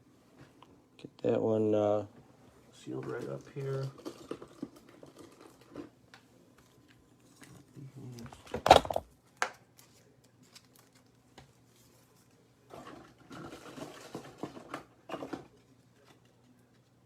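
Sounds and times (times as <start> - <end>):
cards rustling and shuffling: 6.6 - 12.4, 15.2 - 17.0.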